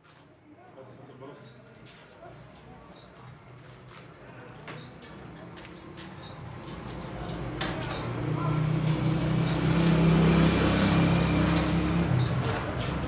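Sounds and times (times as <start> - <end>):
vehicle engine running: 6.6 - 13.0.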